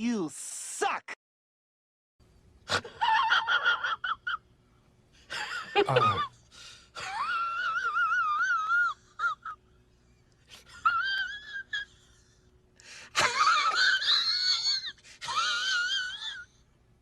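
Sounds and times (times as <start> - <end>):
high-pitched wailing cries: 7.1 - 9.6, 13.8 - 16.5.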